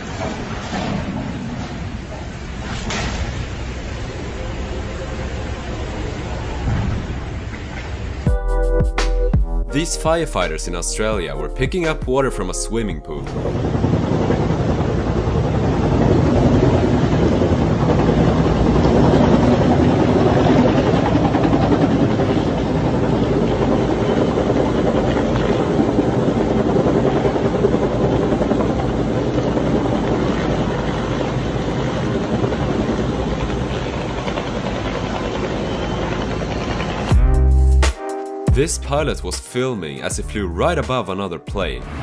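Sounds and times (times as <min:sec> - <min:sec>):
helicopter hovering: 0:09.7 - 0:37.9.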